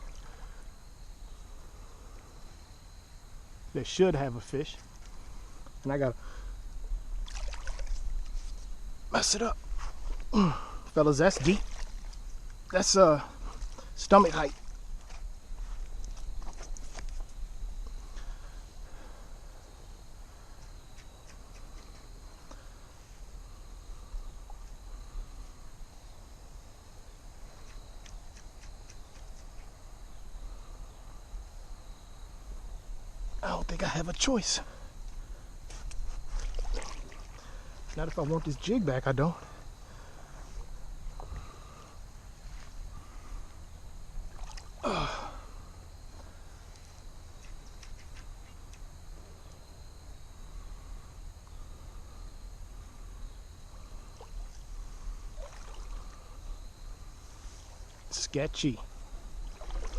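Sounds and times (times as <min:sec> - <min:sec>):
water sloshing and dripping: 0:00.0 - 0:00.6, 0:07.2 - 0:08.7, 0:10.9 - 0:17.3, 0:35.7 - 0:38.9, 0:44.2 - 0:44.8, 0:54.1 - 0:56.3, 0:59.3 - 0:59.9
light water splashes: 0:00.0 - 0:00.7, 0:07.1 - 0:15.2, 0:35.6 - 0:39.6, 0:44.2 - 0:45.4, 0:54.0 - 0:56.4, 0:58.7 - 0:59.9
insects trilling: 0:00.0 - 0:59.9
person grunting: 0:10.3 - 0:10.8, 0:44.8 - 0:45.4
faint ticks: 0:20.5 - 0:22.7, 0:27.6 - 0:29.8, 0:46.1 - 0:49.7.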